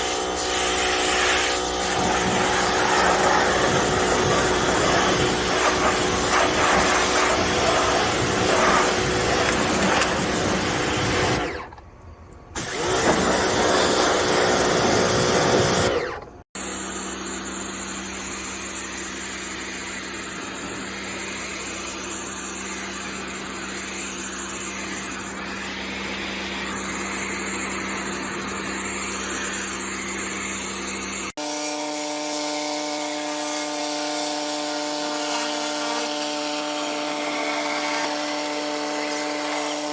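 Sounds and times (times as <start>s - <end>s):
pressure washer spraying: 0.0s - 11.6s, 12.6s - 15.9s, 35.0s - 39.9s
pitched motor hum: 0.0s - 12.0s.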